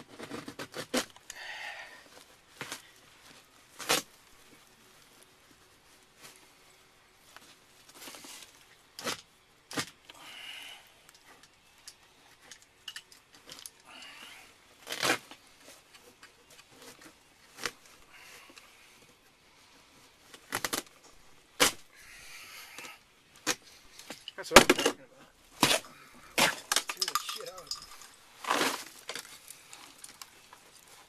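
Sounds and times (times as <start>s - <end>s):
carpet being torn out: 0.0s - 1.2s, 3.8s - 4.2s, 9.0s - 10.0s, 14.8s - 15.4s, 20.4s - 20.9s, 21.6s - 21.9s, 25.6s - 26.7s, 28.4s - 29.1s.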